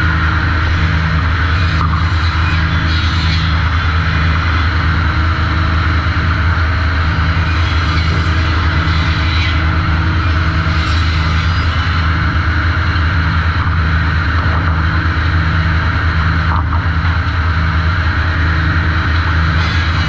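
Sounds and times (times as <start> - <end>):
sawmill machinery humming: 0.0 - 12.7, 18.2 - 20.0.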